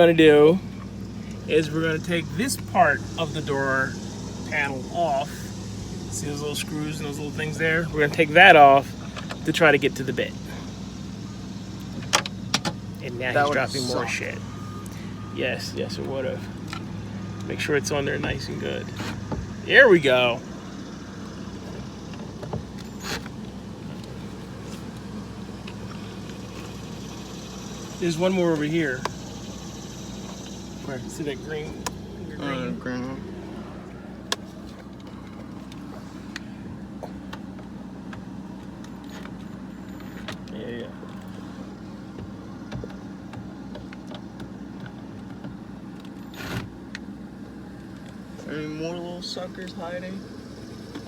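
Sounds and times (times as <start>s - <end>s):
car engine idling: 0.0s - 51.0s
steady low hum: 0.0s - 51.0s.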